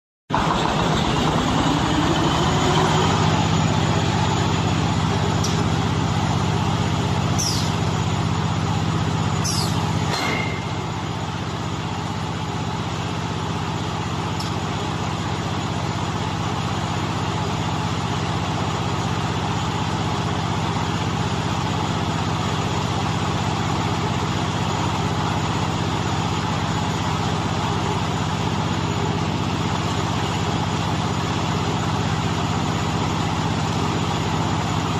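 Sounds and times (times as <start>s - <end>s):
rising whine: 0.3s - 12.6s
baler machine droning: 0.3s - 34.9s
sharp metal clanks: 9.4s - 11.4s.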